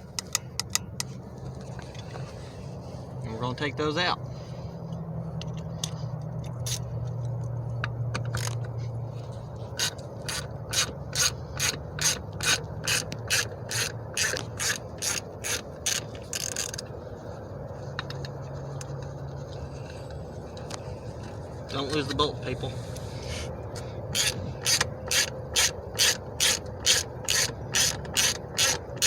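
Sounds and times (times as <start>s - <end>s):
ratchet wrench clicking: 0.2s - 1.1s, 5.4s - 8.7s, 9.7s - 16.9s, 24.1s - 29.0s
bolt rasping loose: 9.8s - 16.9s, 23.8s - 29.0s.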